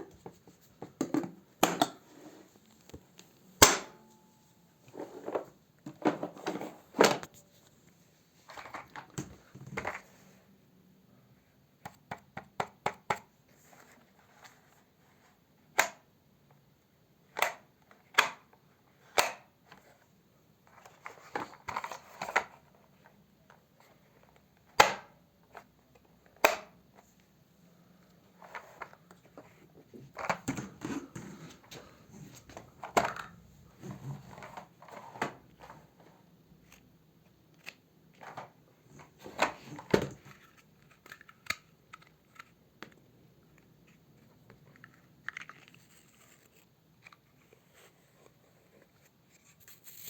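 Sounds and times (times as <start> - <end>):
plastic parts clicking and knocking: 0.1 - 2.0, 28.4 - 35.8, 36.6 - 47.3
rustling and scraping: 4.8 - 8.9, 28.4 - 36.2, 43.8 - 50.0.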